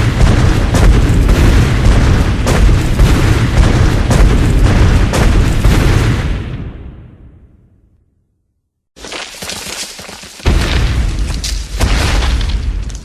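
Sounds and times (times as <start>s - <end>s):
deep boom-like rumble: 0.0s - 7.4s.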